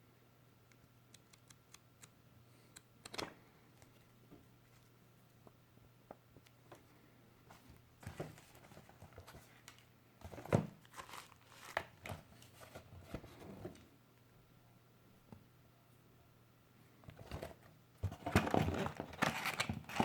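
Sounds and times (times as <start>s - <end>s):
packaging crinkling and rustling: 10.3s - 12.8s, 17.3s - 20.0s.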